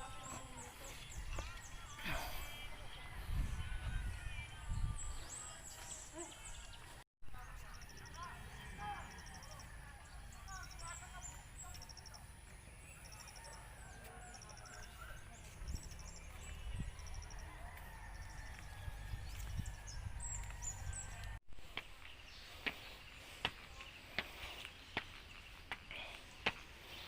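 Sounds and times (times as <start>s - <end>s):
small birds trilling: 5.0s - 27.0s
distant rooster crowing: 16.4s - 21.4s.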